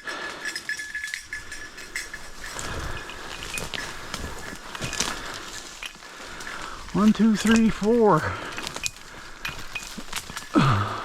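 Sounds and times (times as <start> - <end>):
dry leaves rustling underfoot: 1.1 - 11.0.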